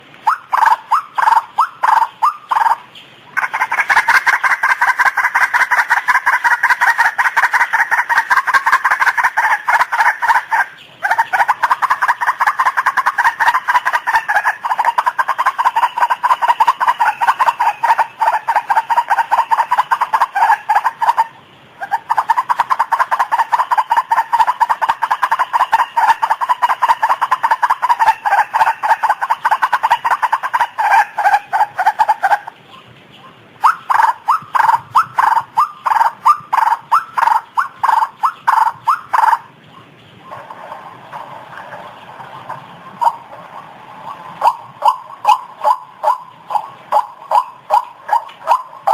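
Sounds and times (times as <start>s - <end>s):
waterhen calling harshly: 0.0s - 32.6s, 33.2s - 48.9s.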